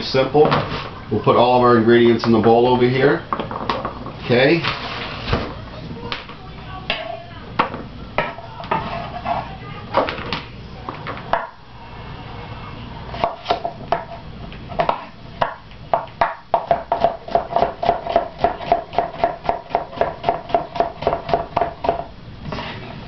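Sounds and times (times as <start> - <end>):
knife chopping on cutting board: 14.8 - 22.1.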